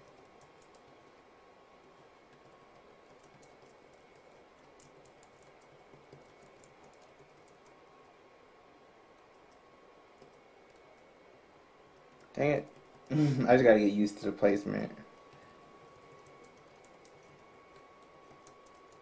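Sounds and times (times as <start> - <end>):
keyboard typing: 0.0 - 1.2, 1.8 - 7.9, 9.2 - 11.1, 15.2 - 19.0.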